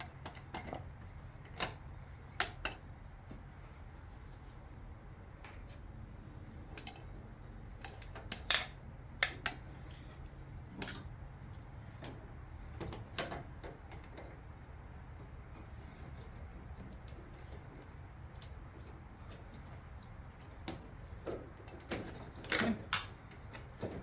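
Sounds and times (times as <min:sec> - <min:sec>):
low steady hum: 0:00.0 - 0:24.0
metal tools clinking: 0:21.6 - 0:24.0.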